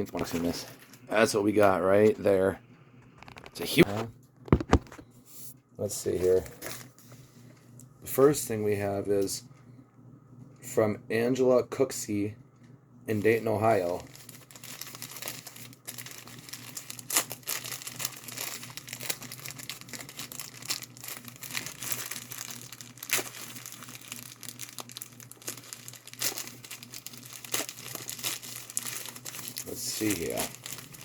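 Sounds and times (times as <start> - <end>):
packaging being torn and crinkled: 14.0 - 31.0.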